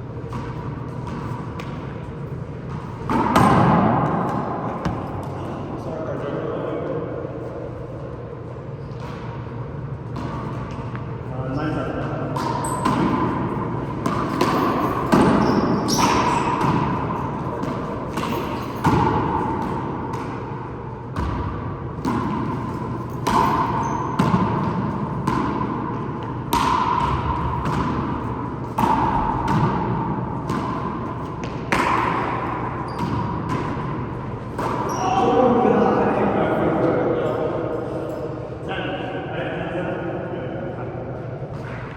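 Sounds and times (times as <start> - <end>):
handball hitting walls: 0.2 - 5.9, 8.9 - 36.2.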